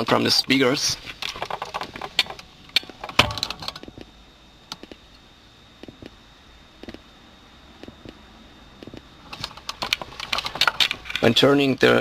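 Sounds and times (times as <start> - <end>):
speaker crackling and clicking: 0.0 - 5.2, 5.8 - 6.2, 6.8 - 7.1, 7.8 - 8.2, 8.8 - 11.4
faint high whine: 0.0 - 12.0.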